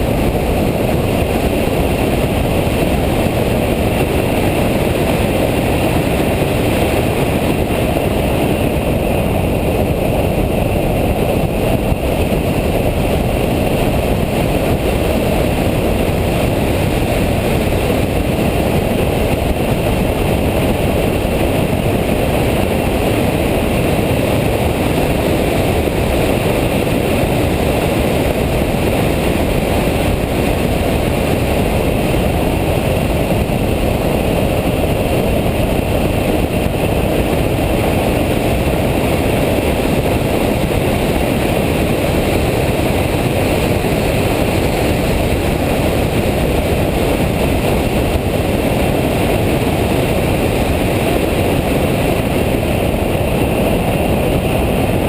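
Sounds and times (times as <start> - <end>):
car engine at speed: 0.0 - 55.0
wind noise: 0.0 - 55.0.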